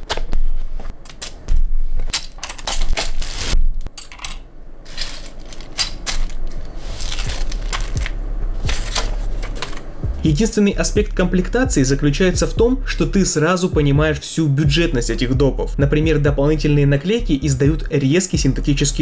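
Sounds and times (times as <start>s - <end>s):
plastic keycaps clicking and clattering: 2.1s - 3.2s.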